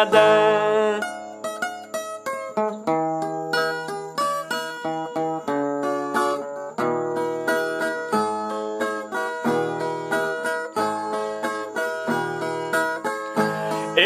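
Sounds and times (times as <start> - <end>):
folk guitar picking melody: 0.0 - 14.0.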